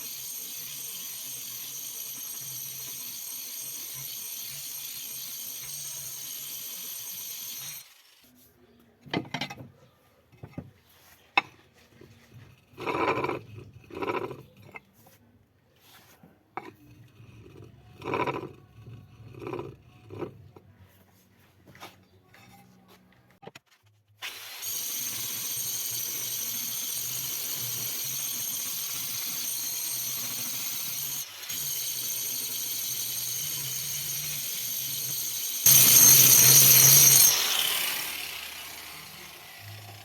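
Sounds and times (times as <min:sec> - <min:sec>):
angle grinder whining: 0:00.0 - 0:08.2, 0:24.2 - 0:40.0.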